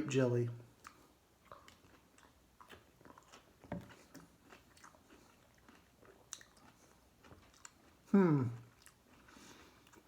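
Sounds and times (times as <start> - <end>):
pickle crunching: 0.8 - 10.0.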